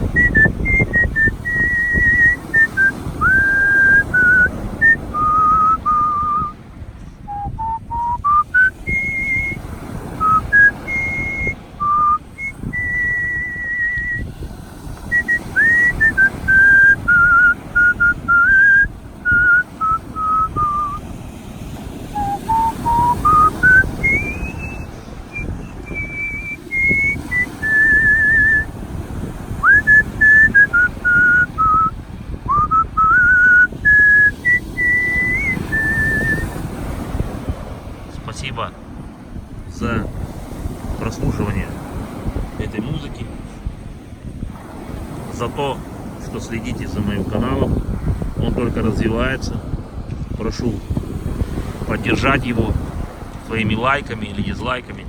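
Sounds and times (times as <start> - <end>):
person whistling a melody: 0.1 - 6.6, 7.3 - 9.6, 10.2 - 14.3, 15.0 - 21.0, 22.1 - 28.7, 29.6 - 36.6.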